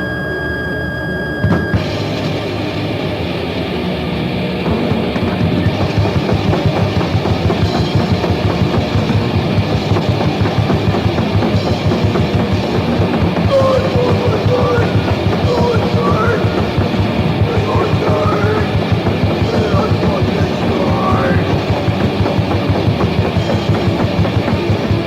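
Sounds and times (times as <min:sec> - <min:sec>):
distorted guitar and bass: 0:00.0 - 0:25.0
pounding drum kit: 0:01.4 - 0:03.4, 0:04.3 - 0:25.0.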